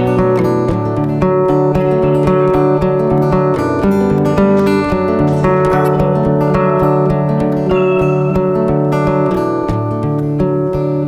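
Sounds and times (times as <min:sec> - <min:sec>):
acoustic guitar strumming: 0:05.7 - 0:09.9.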